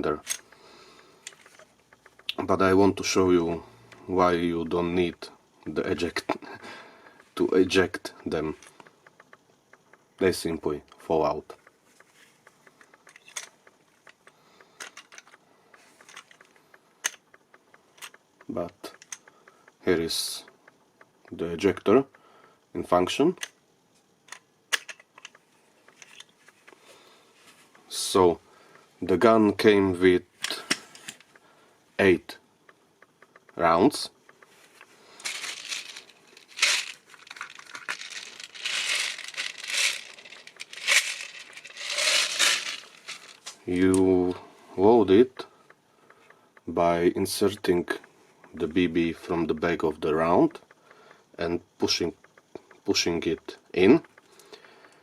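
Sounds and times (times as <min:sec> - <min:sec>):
cartridge shells dropping: 0:00.0 - 0:02.4, 0:11.6 - 0:19.7, 0:24.2 - 0:27.1, 0:34.2 - 0:44.0
toy revolver clicks and rattles: 0:00.0 - 0:02.7, 0:08.5 - 0:10.2, 0:11.5 - 0:19.8, 0:23.3 - 0:26.9, 0:34.2 - 0:44.0, 0:51.7 - 0:55.0
plastic packaging crinkling: 0:35.2 - 0:43.6.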